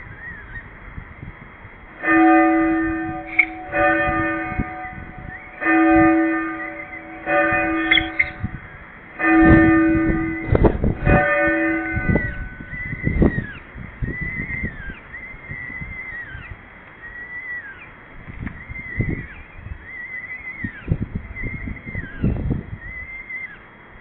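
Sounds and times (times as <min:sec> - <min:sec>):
church bells ringing: 0:02.0 - 0:12.8.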